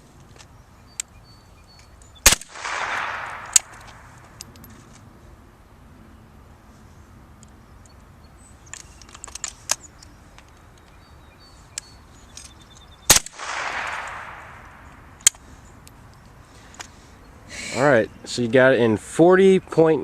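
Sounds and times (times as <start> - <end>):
rifle action clicks: 1.8 - 4.8
rifle shot: 2.2 - 4.3, 13.1 - 14.8.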